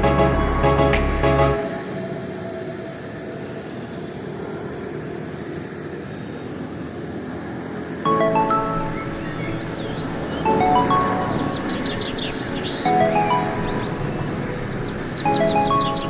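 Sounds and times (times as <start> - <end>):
music: 0.0 - 3.6, 8.1 - 16.0.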